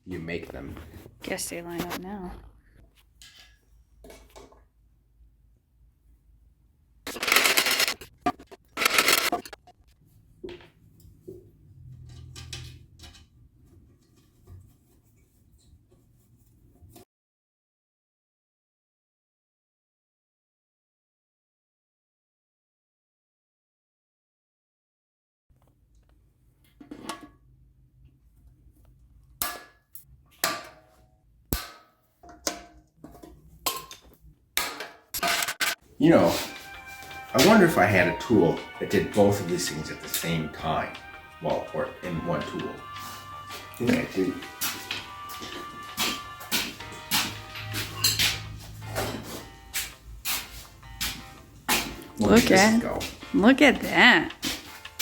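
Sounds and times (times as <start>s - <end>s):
metal parts clinking: 7.1s - 8.1s, 8.8s - 9.5s
hammer striking metal rivets: 34.6s - 35.8s.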